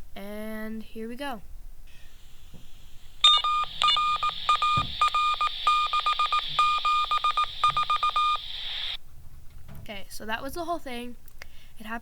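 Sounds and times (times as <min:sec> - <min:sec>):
radio hiss: 0:01.9 - 0:09.0
morse code beeps: 0:03.2 - 0:09.0.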